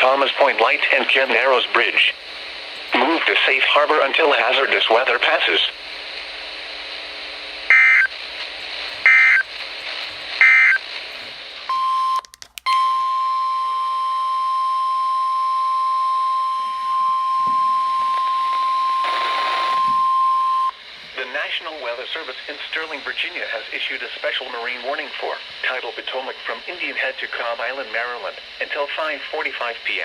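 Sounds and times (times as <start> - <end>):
steady alarm tone: 7.7 - 8.1, 9.0 - 9.5, 10.4 - 10.8
screeching digital data bursts: 9.1 - 9.5.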